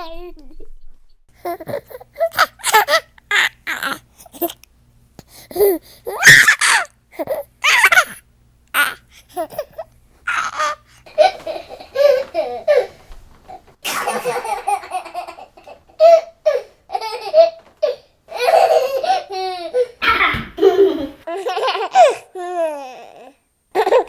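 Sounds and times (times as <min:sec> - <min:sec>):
baby laughing: 0:01.4 - 0:04.6, 0:05.6 - 0:08.2, 0:08.8 - 0:13.0, 0:13.9 - 0:24.0.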